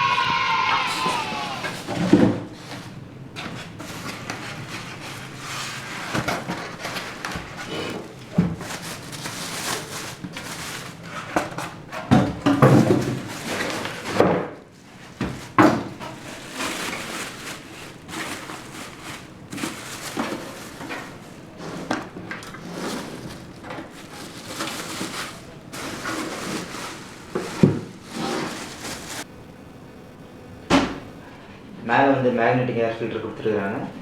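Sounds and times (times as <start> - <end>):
packaging rustling: 3.7 - 11.6, 15.1 - 21.6, 22.2 - 29.3.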